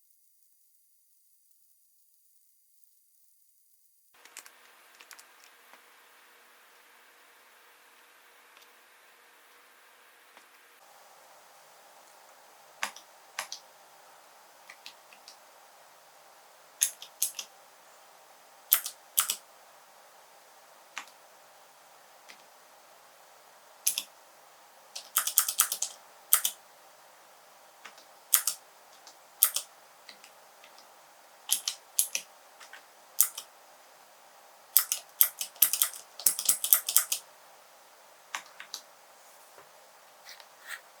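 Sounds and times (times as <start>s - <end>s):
mechanical keyboard clicks: 16.8s - 17.5s, 18.7s - 19.4s, 23.9s - 24.1s, 25.0s - 26.6s, 27.9s - 30.8s, 31.5s - 33.5s, 34.8s - 37.2s.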